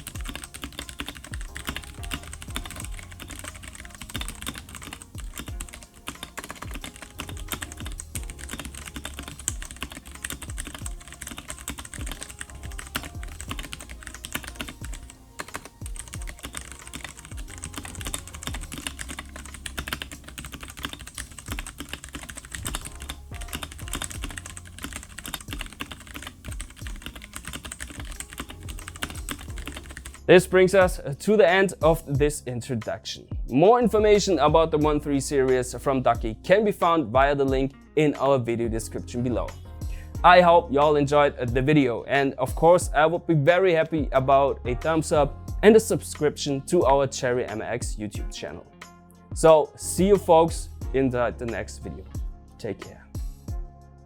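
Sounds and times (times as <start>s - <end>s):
fast typing on mechanical keyboard: 0.0s - 30.2s.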